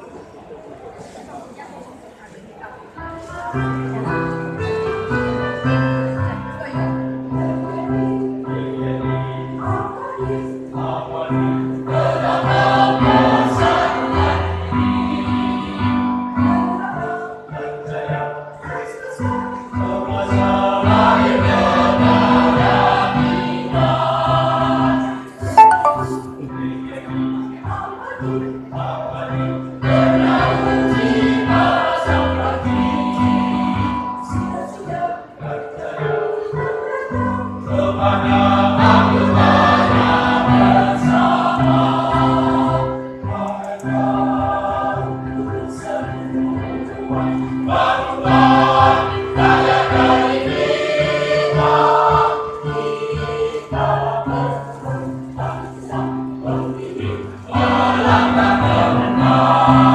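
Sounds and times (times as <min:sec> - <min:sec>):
choir singing: 0:05.6 - 0:59.9.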